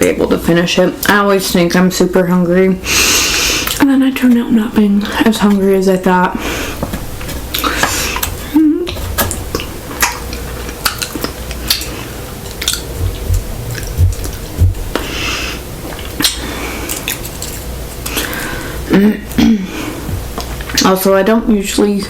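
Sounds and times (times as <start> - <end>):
chewing with wet mouth clicks: 7.5 - 15.0, 15.9 - 18.4
low thumps: 12.7 - 15.8.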